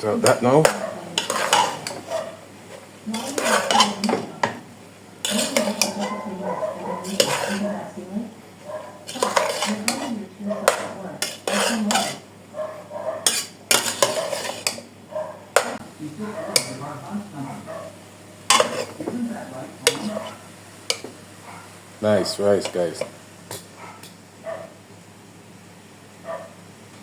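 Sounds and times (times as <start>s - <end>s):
utensil stirring rice in pot: 0.0s - 4.6s, 5.2s - 8.0s, 8.8s - 12.3s, 13.2s - 14.9s, 18.5s - 19.2s, 19.8s - 21.2s.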